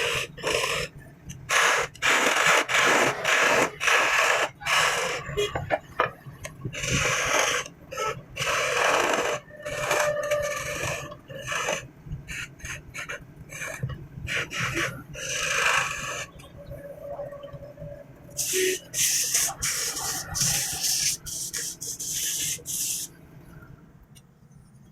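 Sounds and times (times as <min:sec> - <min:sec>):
rasping strokes on wood: 0:06.7 - 0:16.4, 0:18.4 - 0:23.1.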